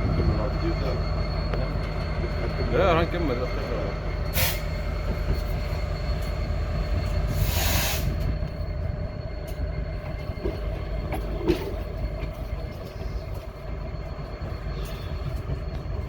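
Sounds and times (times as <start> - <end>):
faint wheel squealing: 0.0 - 16.0
train wheels rumbling on rails: 0.0 - 16.0.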